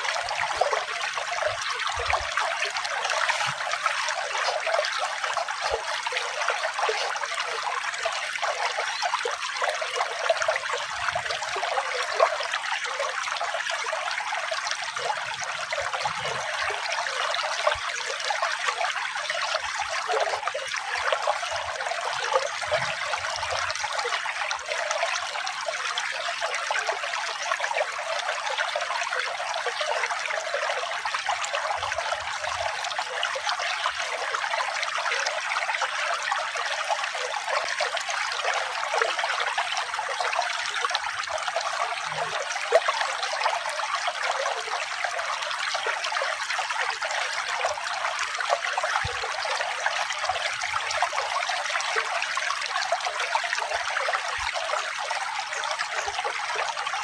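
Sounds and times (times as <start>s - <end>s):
water trickling and splashing: 0.0s - 57.0s.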